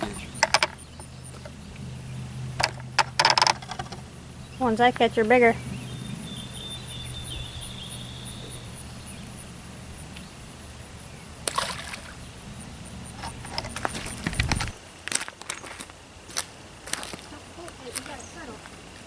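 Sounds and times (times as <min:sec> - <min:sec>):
sharp clicks and knocks: 0:00.0 - 0:01.9, 0:02.6 - 0:04.1
water sloshing and splashing: 0:00.0 - 0:15.8
insect chirping: 0:00.0 - 0:19.0.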